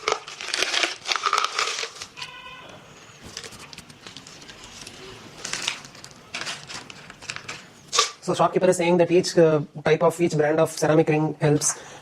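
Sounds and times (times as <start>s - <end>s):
plastic packet crinkling: 0.0s - 2.5s, 3.2s - 8.3s.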